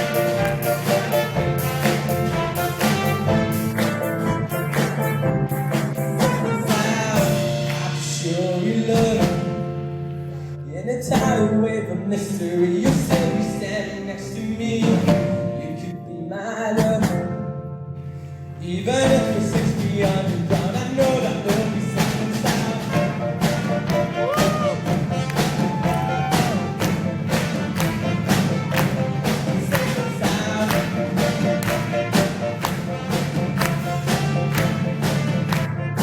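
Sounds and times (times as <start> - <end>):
drum beat: 0.0 - 9.6, 19.0 - 36.0
person singing: 5.9 - 9.6.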